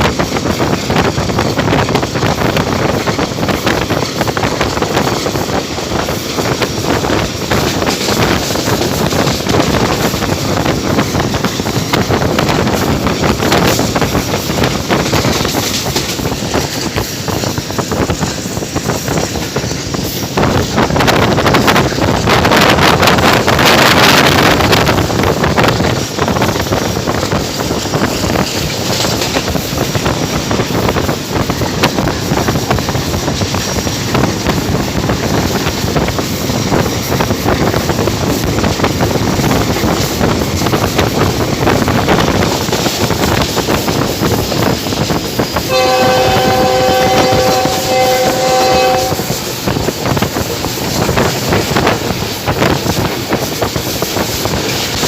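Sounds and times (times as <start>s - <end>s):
train running at speed: 0.0s - 55.0s
wind on microphone: 0.0s - 55.0s
diesel locomotive horn: 45.6s - 49.5s.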